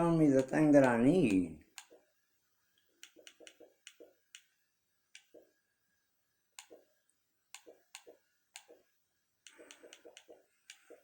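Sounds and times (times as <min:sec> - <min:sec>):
computer mouse clicks: 0:01.7 - 0:02.0, 0:03.0 - 0:04.5, 0:05.1 - 0:05.5, 0:06.6 - 0:06.8, 0:07.5 - 0:08.8, 0:09.4 - 0:11.0.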